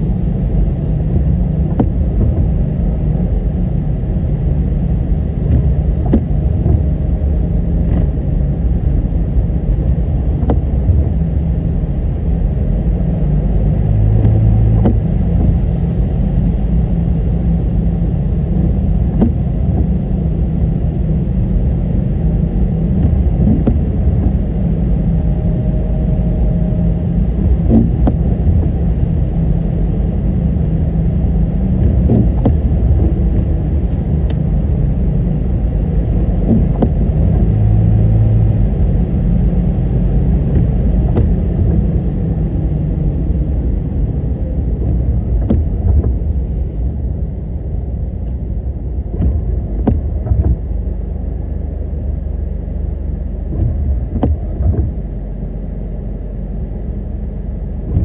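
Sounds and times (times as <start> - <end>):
car interior road rumble: 0.0 - 58.0
sharp clicks and knocks: 5.5 - 6.9, 10.4 - 11.2, 14.2 - 15.6, 19.1 - 19.9, 23.0 - 24.4, 27.4 - 28.8, 31.8 - 34.5, 36.4 - 37.5, 40.5 - 41.9, 44.8 - 46.3, 49.1 - 50.6, 53.5 - 55.0.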